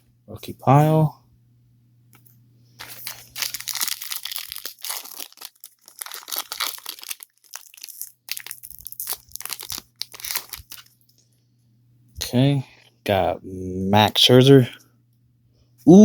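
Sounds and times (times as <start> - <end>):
foil wrapper crinkling and tearing: 2.8 - 11.1.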